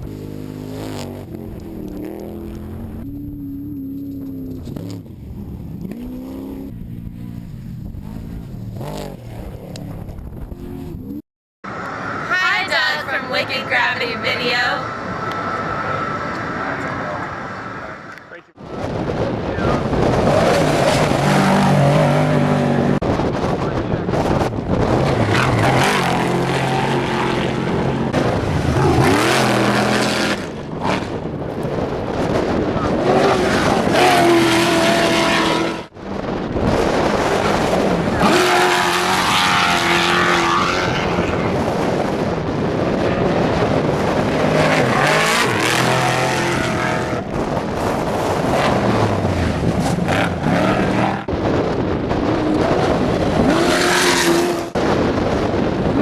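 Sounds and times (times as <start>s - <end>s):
truck engine revving: 0.0s - 55.2s
rushing noise: 11.6s - 56.0s.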